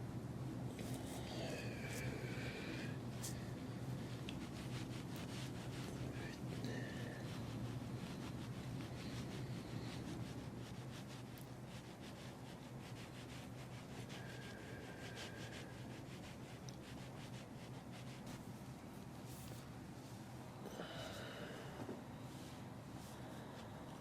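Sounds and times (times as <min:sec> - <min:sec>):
steady low hum: 0:00.0 - 0:24.0
hands rubbing on body: 0:00.8 - 0:19.7.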